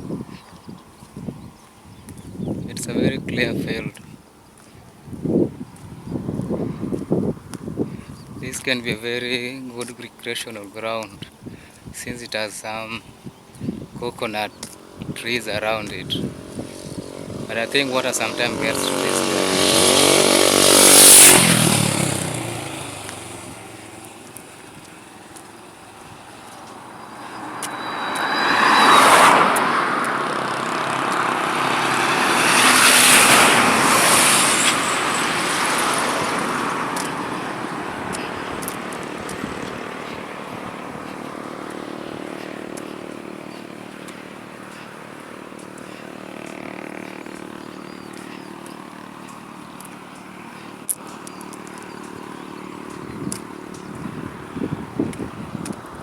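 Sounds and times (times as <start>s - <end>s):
vehicles passing by: 0.0s - 56.0s.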